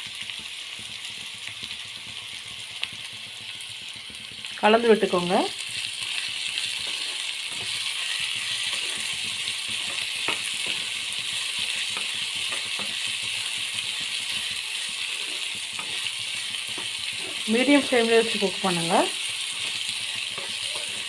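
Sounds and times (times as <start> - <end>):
vegetables sizzling in oil: 0.0 - 21.0
spoon scraping a pan: 5.6 - 21.0.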